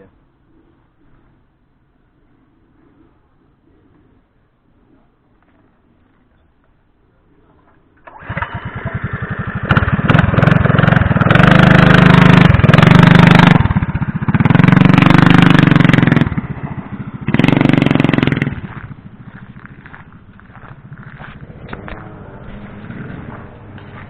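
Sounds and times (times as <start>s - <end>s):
small motorbike engine revving: 8.0s - 24.0s.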